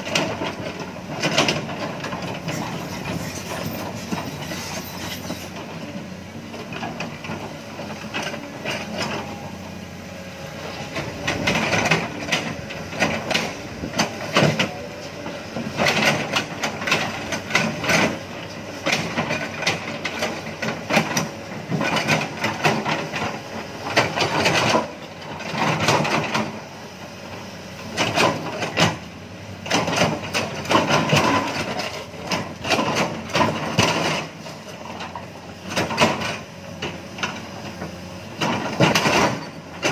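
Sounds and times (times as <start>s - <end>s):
clanks and scraping clatter: 0.0s - 5.8s, 27.9s - 39.9s
diesel engine running: 0.0s - 39.9s.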